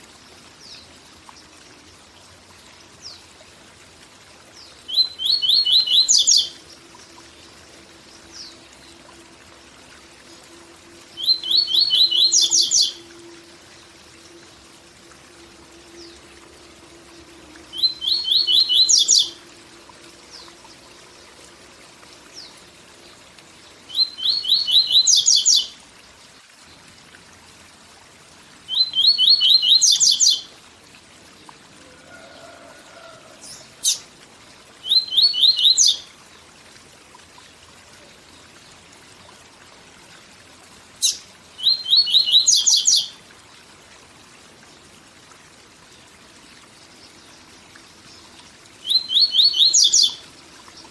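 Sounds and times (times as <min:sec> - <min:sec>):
small bird singing: 0:04.6 - 0:06.6, 0:11.2 - 0:13.1, 0:17.7 - 0:19.4, 0:23.9 - 0:25.8, 0:28.7 - 0:30.5, 0:34.8 - 0:36.1, 0:41.0 - 0:43.2, 0:48.8 - 0:50.9
waterfall rushing: 0:31.8 - 0:34.0.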